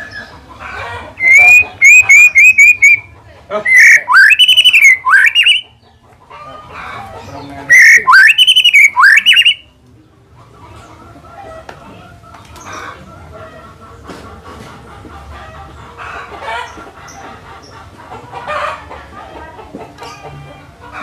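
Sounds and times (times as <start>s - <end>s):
bird singing whistled phrases: 1.2s - 3.1s, 3.7s - 5.7s, 7.7s - 9.7s.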